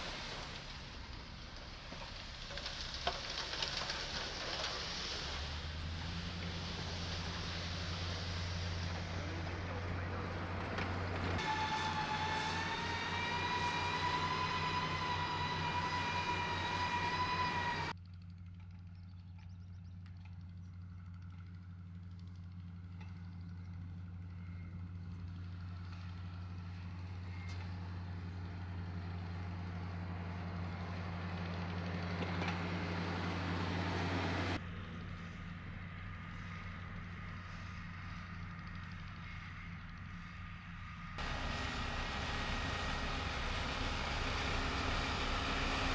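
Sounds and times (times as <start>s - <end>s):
diesel machinery engine drone: 0.0s - 45.9s
high whine: 11.4s - 17.9s.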